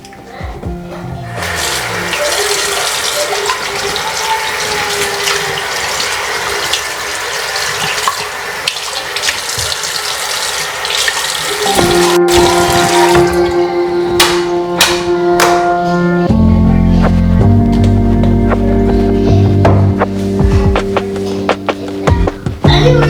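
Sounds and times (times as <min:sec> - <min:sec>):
tap water running into sink: 0:01.3 - 0:13.6.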